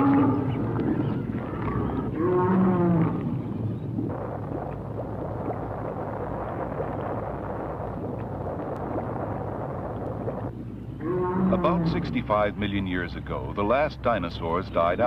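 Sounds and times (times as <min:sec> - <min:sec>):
deep hum: 0:00.0 - 0:14.0
low rushing noise: 0:00.0 - 0:15.0.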